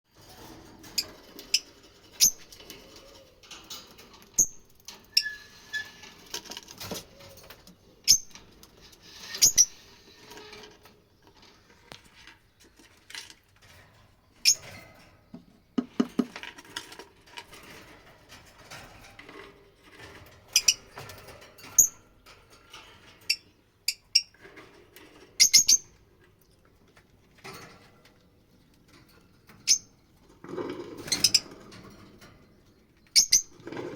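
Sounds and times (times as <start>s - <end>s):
lovebirds chirping and squeaking: 0.6s - 12.9s, 14.4s - 14.8s, 20.5s - 21.0s, 21.7s - 22.0s, 25.4s - 26.0s, 29.6s - 30.0s, 30.8s - 33.9s.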